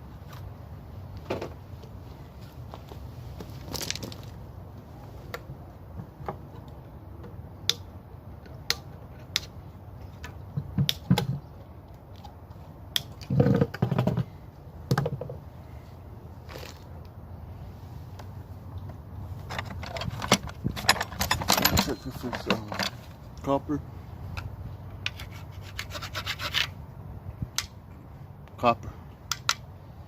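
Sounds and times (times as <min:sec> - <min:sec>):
hand tools clicking and knocking: 0:19.4 - 0:23.2
metal parts clattering: 0:19.4 - 0:23.2.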